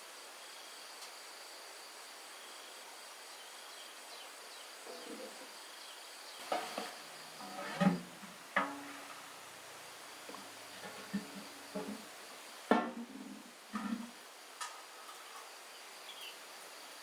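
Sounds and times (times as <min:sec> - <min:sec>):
insects chirring: 0:00.0 - 0:17.0
sharp knocks or clatters: 0:06.4 - 0:09.4, 0:10.3 - 0:14.8.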